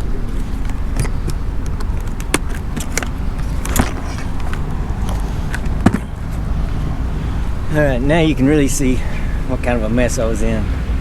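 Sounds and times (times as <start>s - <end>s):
tent poles clicking and rattling: 0.0s - 6.8s
low rumble: 0.0s - 9.9s.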